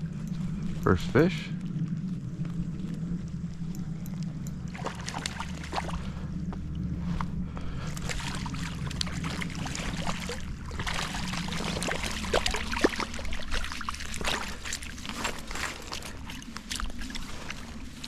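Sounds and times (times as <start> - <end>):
creek water running: 4.7 - 6.2, 7.8 - 18.0
water splashes: 4.7 - 6.2, 7.9 - 18.0.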